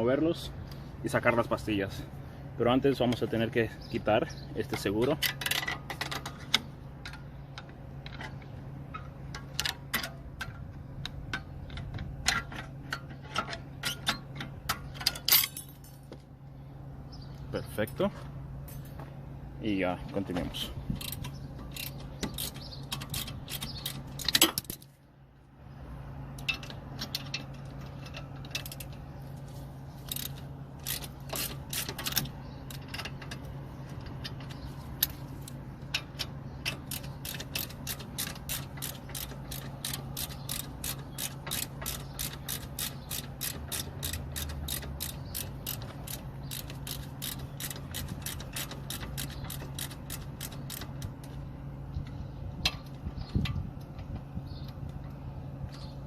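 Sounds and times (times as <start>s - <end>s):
ratchet wrench clicking: 21.0s - 24.8s, 30.0s - 35.2s, 35.9s - 51.4s.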